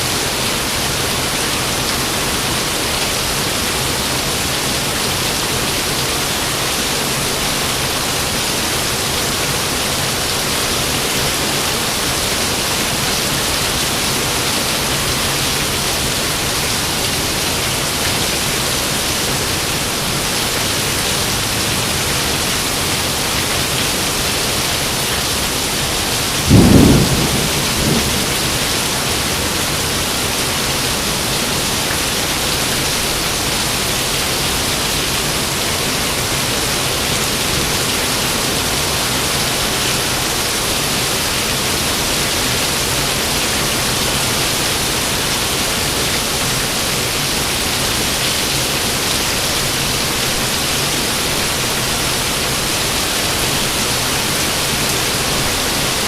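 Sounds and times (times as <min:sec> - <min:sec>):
heavy rain: 0:00.0 - 0:56.0
thunder clap: 0:26.3 - 0:30.5.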